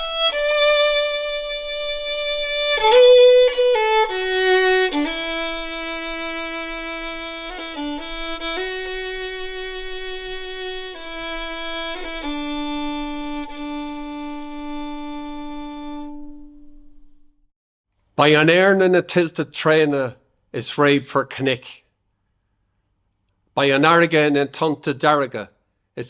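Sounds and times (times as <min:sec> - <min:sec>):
solo violin slow melody: 0:00.0 - 0:17.3.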